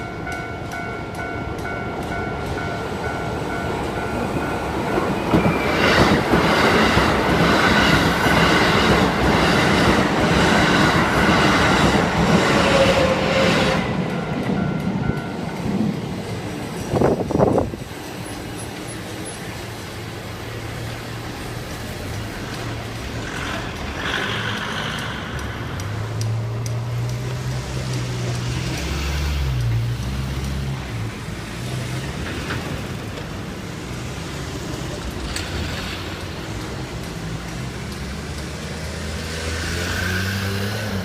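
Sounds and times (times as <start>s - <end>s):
vehicle engines passing slowly: 20.2s - 41.0s.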